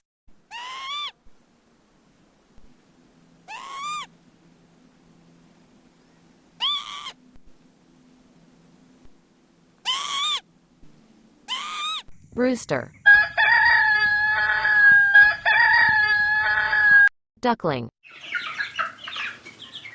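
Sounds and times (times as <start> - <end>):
short arching animal call: 0.5 - 1.2, 3.4 - 4.1, 6.6 - 7.2, 9.8 - 10.5, 11.4 - 12.1
faint low hum: 0.8 - 13.1.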